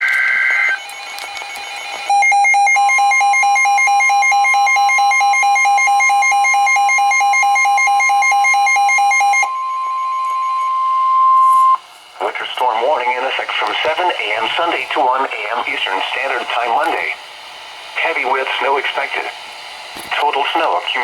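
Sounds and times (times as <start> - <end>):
two-tone data warble: 0.0 - 13.6
steady warning alarm tone: 0.0 - 21.0
alarm beeping rapidly: 0.1 - 11.8.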